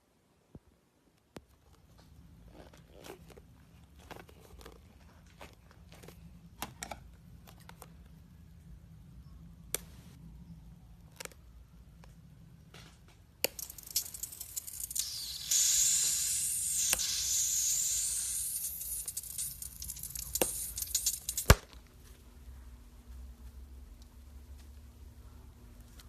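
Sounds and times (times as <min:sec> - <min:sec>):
loud steady hiss: 0:13.5 - 0:21.6.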